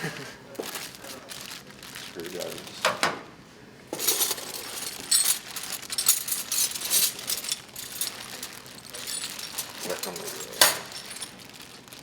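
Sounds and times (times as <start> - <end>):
metal hand tools clinking: 4.0 - 11.8.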